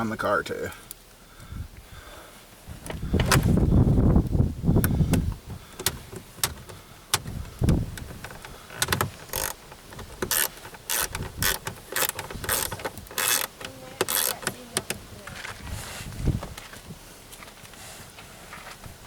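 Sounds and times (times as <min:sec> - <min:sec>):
short scraping rasps: 0:04.8 - 0:16.2.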